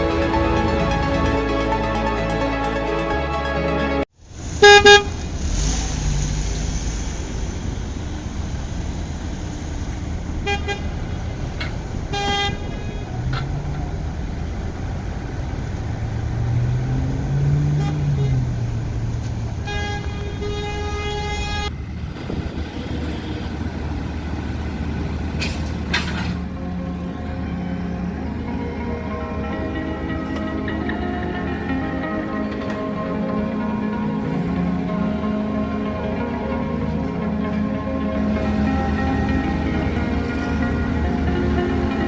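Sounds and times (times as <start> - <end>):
diesel engine revving: 0.0 - 42.0
vehicle horn honks: 4.6 - 5.3, 10.4 - 11.1, 12.1 - 13.2, 17.7 - 18.4, 19.6 - 21.7.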